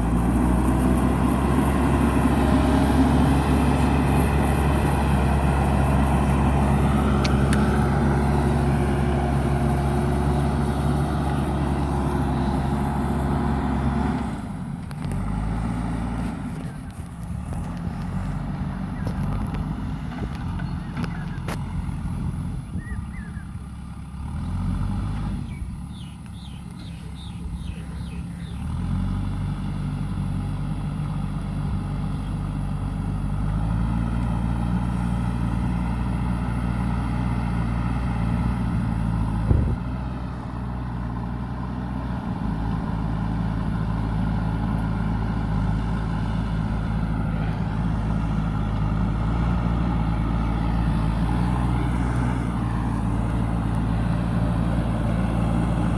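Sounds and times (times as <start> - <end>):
diesel engine running: 0.0 - 55.9.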